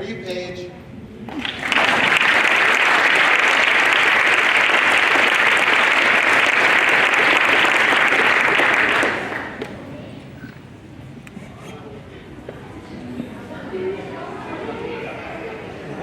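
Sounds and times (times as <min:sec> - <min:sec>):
audience clapping: 0:01.3 - 0:09.7.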